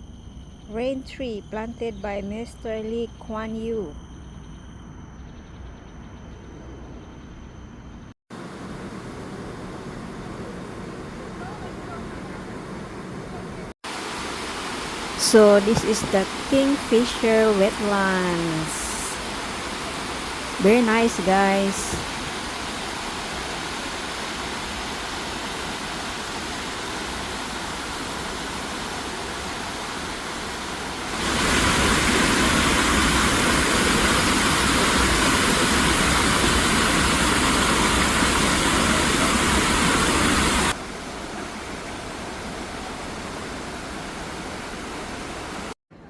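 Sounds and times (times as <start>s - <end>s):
running water rushing: 13.8s - 45.8s.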